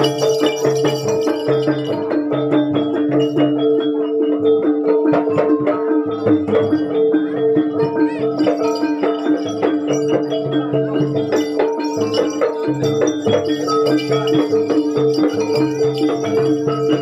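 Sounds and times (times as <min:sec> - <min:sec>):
drum strokes: 0:00.0 - 0:17.0
metallophone notes: 0:00.0 - 0:17.0.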